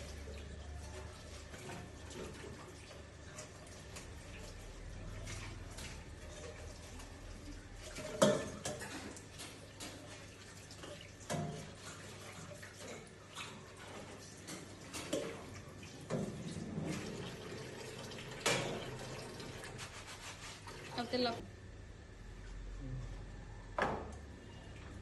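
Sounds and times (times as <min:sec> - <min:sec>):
water running at sink: 0:00.0 - 0:21.4.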